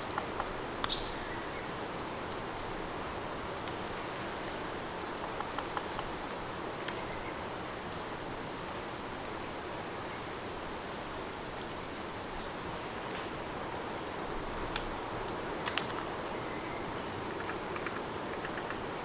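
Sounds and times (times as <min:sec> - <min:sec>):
steady rain: 0:01.8 - 0:17.9.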